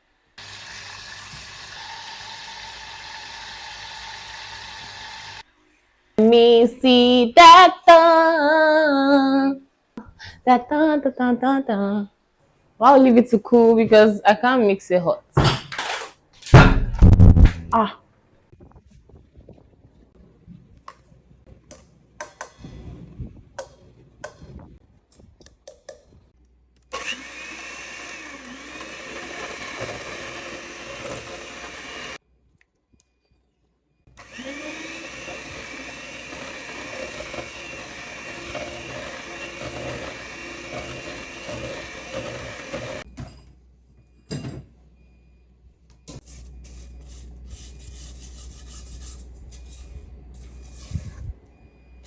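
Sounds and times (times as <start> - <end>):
electric mixer running: 0.4 - 5.4, 27.0 - 32.2, 34.2 - 43.0.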